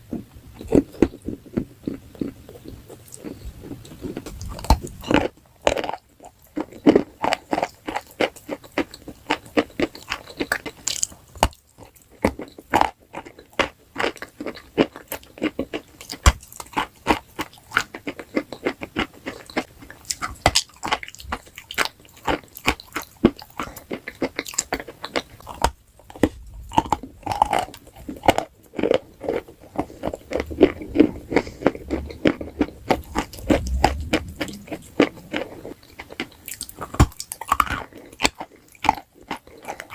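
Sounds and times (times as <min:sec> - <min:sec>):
person chewing crunchy food: 0:00.0 - 0:39.9.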